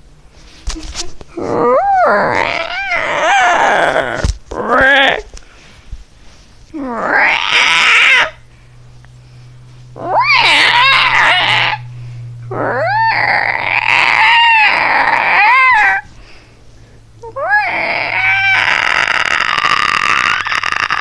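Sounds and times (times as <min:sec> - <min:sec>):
person imitating dinosaur roars: 0:01.3 - 0:05.3, 0:06.7 - 0:08.4, 0:10.0 - 0:11.9, 0:12.5 - 0:16.1, 0:17.2 - 0:21.0.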